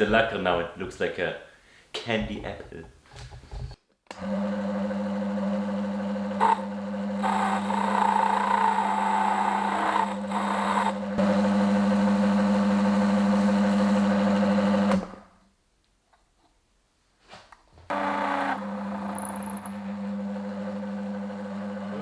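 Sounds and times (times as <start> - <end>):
wood lathe humming: 4.2 - 15.2, 17.9 - 22.0.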